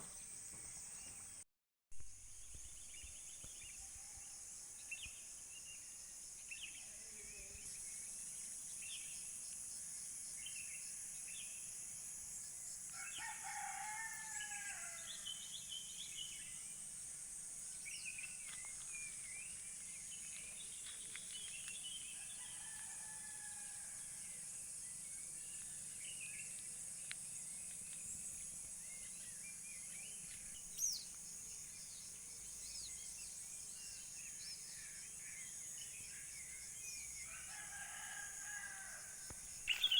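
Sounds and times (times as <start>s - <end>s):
rooster crowing: 13.0s - 15.2s, 22.2s - 24.0s, 37.3s - 39.1s
small birds chirping: 17.8s - 22.8s, 39.6s - 39.9s.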